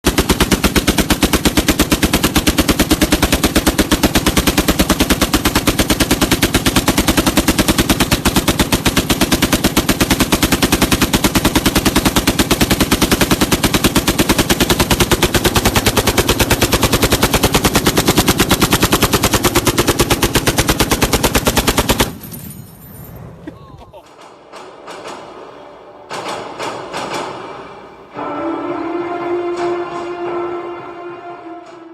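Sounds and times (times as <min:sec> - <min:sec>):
machine gun firing automatic burst: 0:00.0 - 0:22.4.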